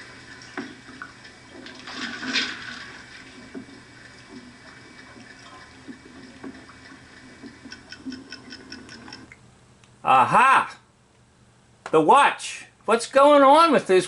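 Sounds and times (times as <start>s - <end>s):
water trickling and dripping: 0.0s - 9.5s
faint creaks and knocks: 0.4s - 9.4s.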